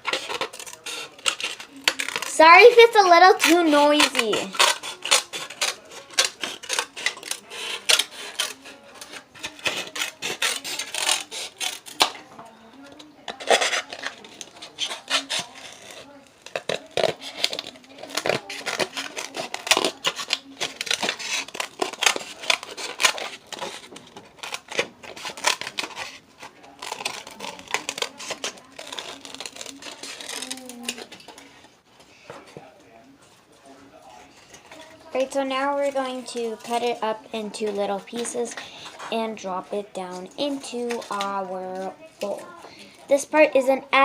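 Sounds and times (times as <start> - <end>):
scissors cracking hard plastic: 0.0 - 31.5, 40.4 - 42.4.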